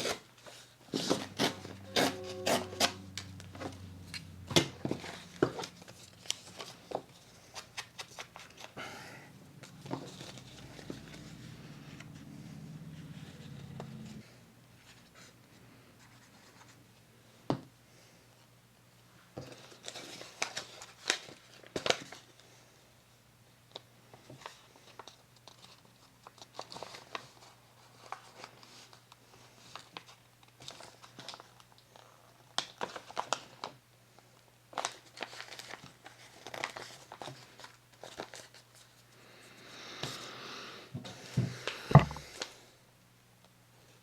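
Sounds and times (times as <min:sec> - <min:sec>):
paper rustling and crinkling: 0:04.6 - 0:08.8, 0:09.6 - 0:12.3, 0:19.4 - 0:22.5, 0:23.7 - 0:39.1
sharp knocks: 0:41.9 - 0:42.3.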